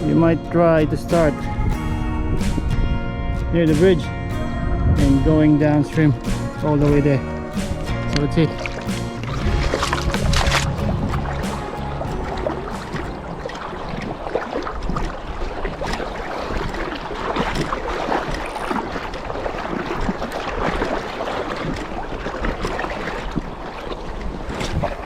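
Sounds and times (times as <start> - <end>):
wind on microphone: 0.0 - 25.0
river water rushing over stones: 6.4 - 25.0.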